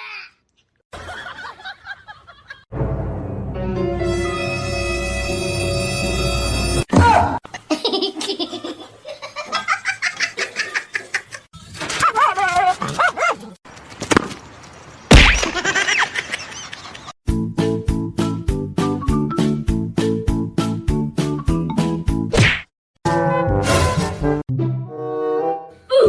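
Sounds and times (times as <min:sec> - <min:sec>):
music: 0:02.7 - 0:06.9, 0:17.3 - 0:22.3, 0:23.1 - 0:25.8.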